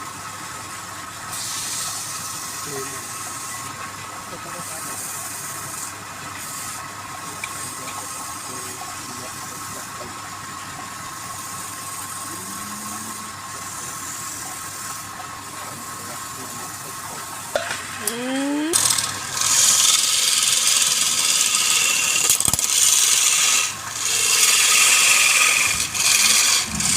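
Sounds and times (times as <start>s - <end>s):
wood lathe motor whine: 0.0s - 26.9s
high hiss: 1.3s - 3.6s.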